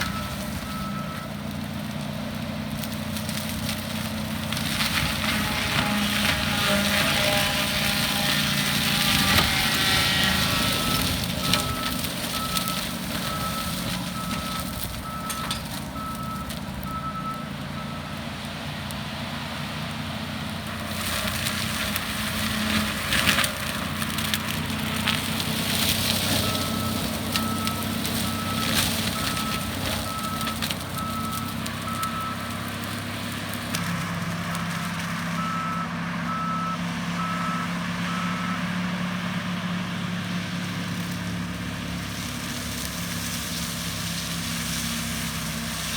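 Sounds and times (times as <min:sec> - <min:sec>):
reversing alarm beeping: 0:00.0 - 0:01.4, 0:09.1 - 0:18.2, 0:26.4 - 0:32.5, 0:35.4 - 0:38.8
wood cracking as shredded: 0:00.0 - 0:38.2, 0:39.0 - 0:45.9
diesel engine running hard: 0:00.0 - 0:45.9.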